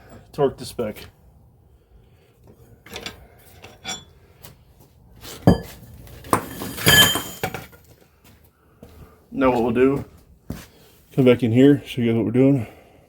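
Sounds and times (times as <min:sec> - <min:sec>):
metal tools clinking and clanking: 0:02.9 - 0:04.1, 0:05.5 - 0:07.8.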